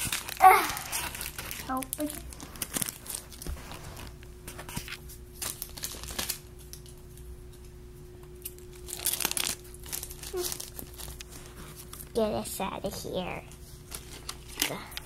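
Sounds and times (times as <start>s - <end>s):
plastic packaging crinkling: 0.0s - 7.0s, 8.4s - 12.2s, 13.8s - 15.0s.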